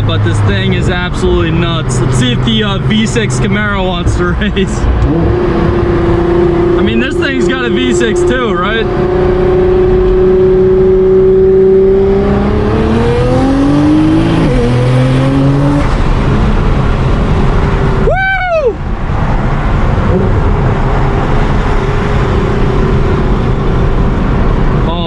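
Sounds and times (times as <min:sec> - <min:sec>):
car engine revving: 0:00.0 - 0:18.1, 0:18.8 - 0:25.0.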